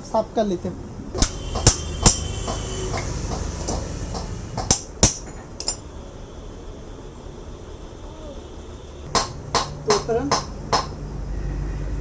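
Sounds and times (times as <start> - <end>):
metallic knocks on engine parts: 1.2 - 5.8, 9.1 - 11.0.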